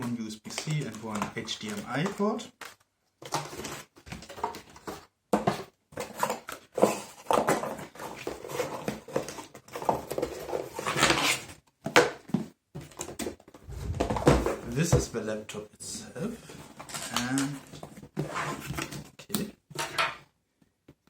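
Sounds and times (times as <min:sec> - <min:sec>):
cardboard boxes being handled: 0:01.6 - 0:15.1.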